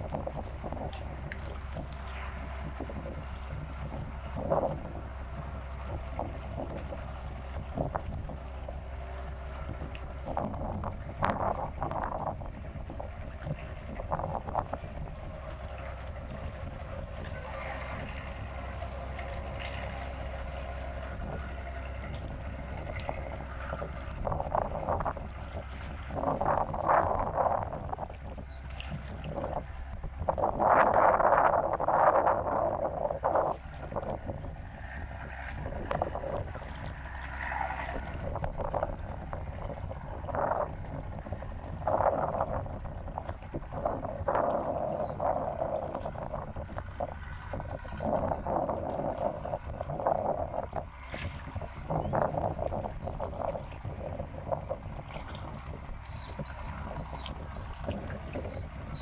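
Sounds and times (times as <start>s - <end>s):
constant low rumble: 0.0s - 59.0s
water lapping and splashing: 0.0s - 59.0s
faint high bird chirps: 56.0s - 57.8s, 58.4s - 59.0s.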